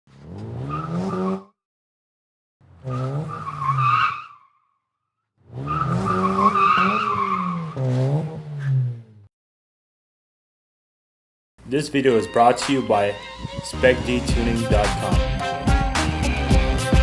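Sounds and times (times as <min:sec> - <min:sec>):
car engine revving: 0:00.1 - 0:01.5, 0:02.6 - 0:04.1, 0:05.4 - 0:09.3
tires squealing: 0:00.1 - 0:01.5, 0:02.6 - 0:04.6, 0:05.4 - 0:09.2.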